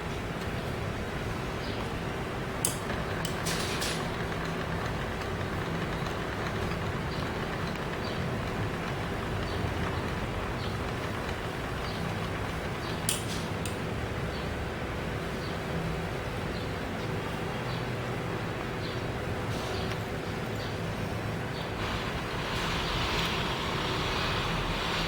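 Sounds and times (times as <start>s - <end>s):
drilling machine humming: 1.0s - 14.3s, 21.8s - 25.0s
faint regular ticking: 2.6s - 14.1s
sharp click: 13.0s - 13.8s.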